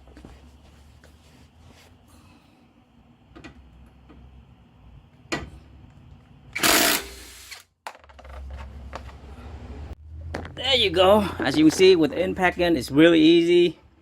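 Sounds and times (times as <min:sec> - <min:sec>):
impact wrench burst: 0:06.6 - 0:07.7.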